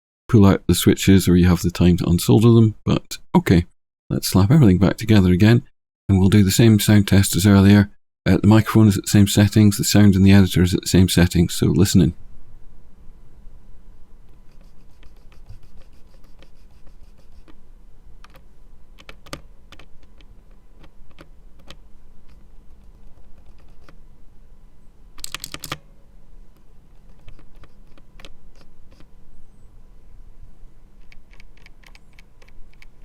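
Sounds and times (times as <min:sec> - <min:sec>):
mechanical keyboard key clicks: 0:19.0 - 0:21.8, 0:25.2 - 0:25.8, 0:31.0 - 0:33.0.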